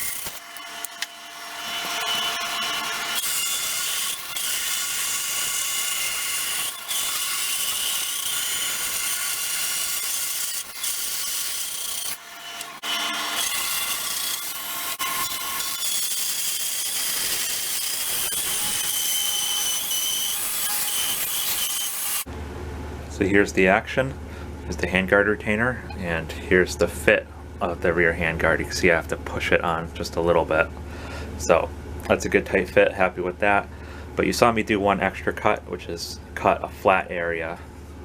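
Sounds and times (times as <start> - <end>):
power tool cutting wood: 0.0 - 22.3.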